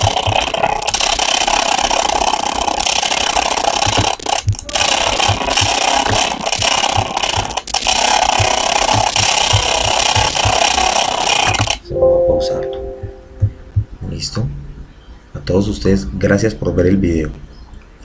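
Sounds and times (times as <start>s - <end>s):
dense rattling noise: 0.0s - 11.8s.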